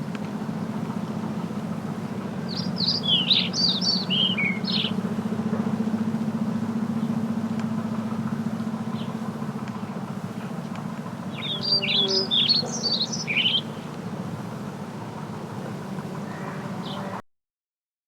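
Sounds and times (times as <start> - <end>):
steady low hum: 0.0 - 17.2
bird chirping: 2.4 - 5.0, 11.3 - 13.9.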